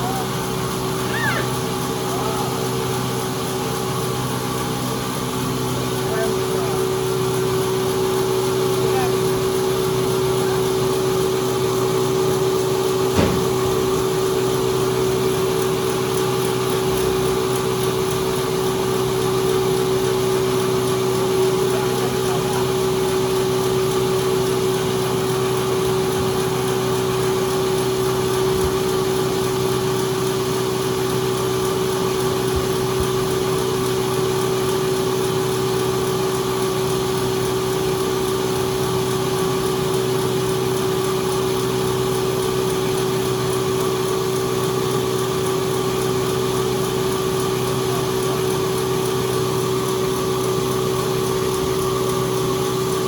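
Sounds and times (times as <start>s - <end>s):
sawmill machinery humming: 0.0s - 53.0s
sharp click: 13.1s - 14.0s.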